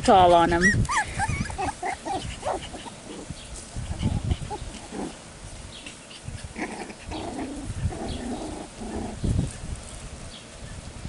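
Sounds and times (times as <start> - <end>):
puppies yipping: 0.5 - 5.2
puppies growling: 0.5 - 9.4.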